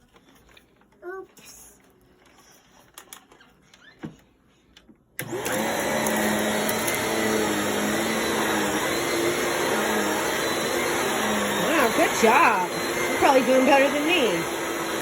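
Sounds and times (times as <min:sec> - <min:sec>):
vacuum cleaner running: 0:05.2 - 0:15.0.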